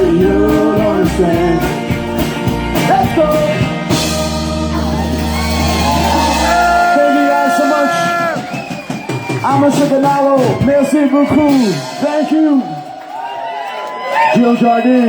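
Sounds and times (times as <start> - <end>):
person singing: 0.0 - 2.1, 2.7 - 8.4
drums striking a steady beat: 0.0 - 12.9
live band playing: 0.0 - 13.3.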